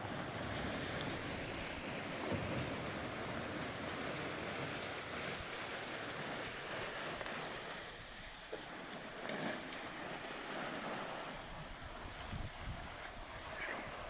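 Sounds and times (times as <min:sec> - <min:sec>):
small sea waves washing: 0:00.0 - 0:14.0
wind on microphone: 0:10.5 - 0:14.0.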